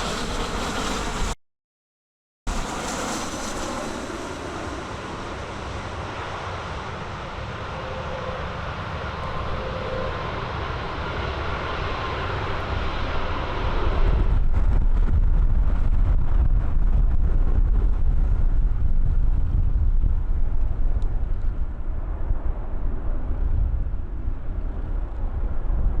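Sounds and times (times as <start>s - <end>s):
wind buffeting microphone: 9.0s - 26.0s.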